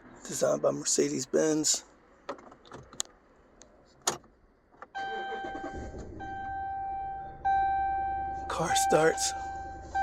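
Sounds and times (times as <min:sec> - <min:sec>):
truck engine idling: 0:04.9 - 0:10.0
electronic chime tone: 0:05.0 - 0:10.0.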